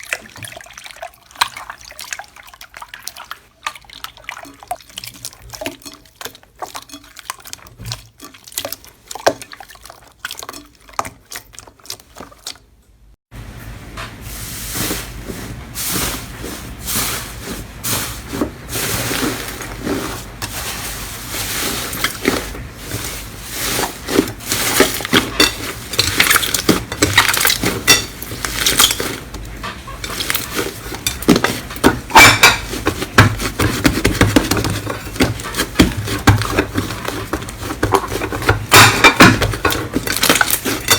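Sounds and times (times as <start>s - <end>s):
slime squelching and popping: 0.0s - 12.7s.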